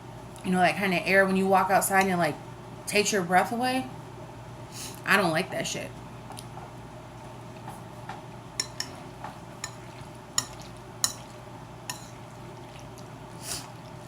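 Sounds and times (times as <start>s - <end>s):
utensil clinking on a dish: 8.6s - 9.0s, 10.4s - 11.3s, 11.9s - 12.2s.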